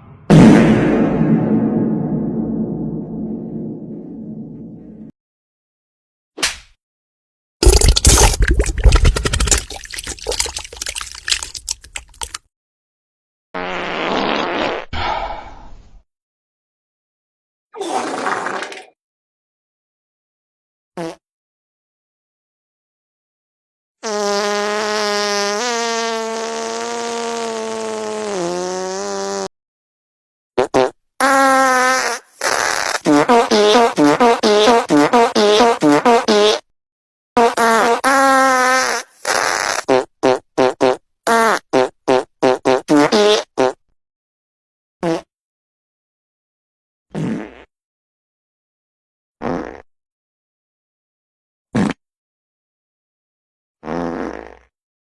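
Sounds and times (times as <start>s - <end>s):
fart sounds: 7.6s - 12.4s, 13.6s - 15.0s, 17.8s - 19.0s, 21.0s - 21.2s, 24.0s - 29.5s, 30.6s - 36.7s, 37.4s - 43.8s, 45.0s - 45.3s, 47.1s - 47.7s, 49.4s - 49.9s, 51.8s - 52.0s, 53.8s - 54.7s.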